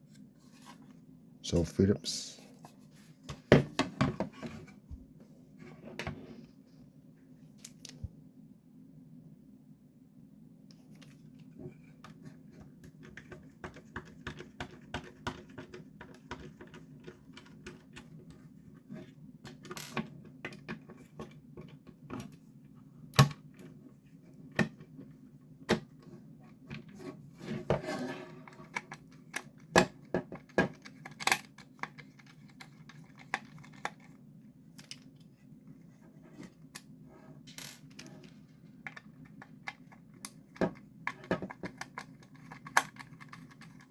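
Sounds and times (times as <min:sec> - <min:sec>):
screwdriver and plastic parts clicking: 0:28.4 - 0:34.1, 0:37.8 - 0:43.9.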